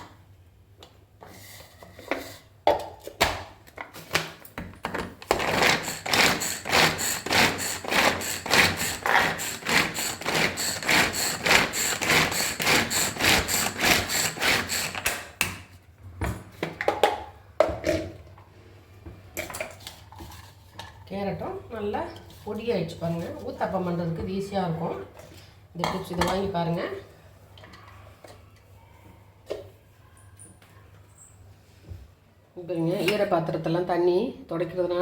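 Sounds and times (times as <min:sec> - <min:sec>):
vegetable chopper chopping carrot: 0:05.3 - 0:15.5.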